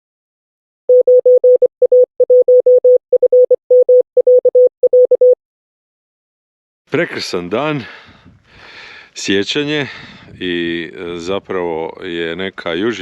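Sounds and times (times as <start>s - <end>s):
morse code beeps: 0.9s - 5.4s.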